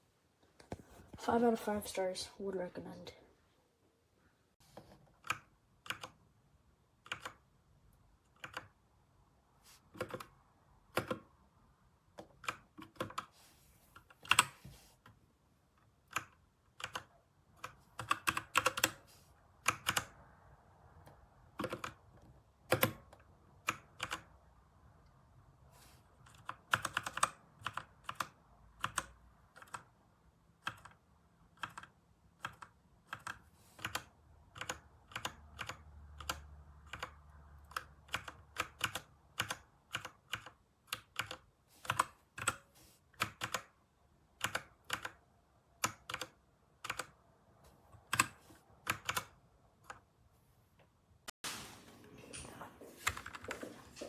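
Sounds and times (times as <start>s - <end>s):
mechanical keyboard clicks: 7.0s - 7.5s, 8.3s - 8.8s, 26.3s - 29.9s, 31.6s - 42.6s, 44.4s - 45.2s, 45.8s - 47.2s, 48.1s - 50.0s.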